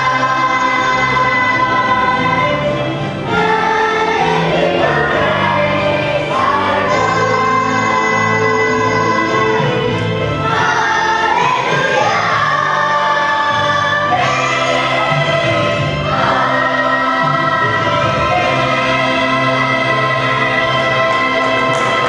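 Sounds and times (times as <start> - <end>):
children's choir singing: 0.0 - 22.0
musical accompaniment: 0.0 - 22.0.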